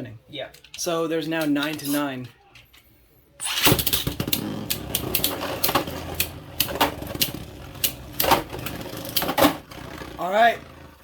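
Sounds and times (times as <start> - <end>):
spinning tops clicking on collision: 3.6 - 9.5.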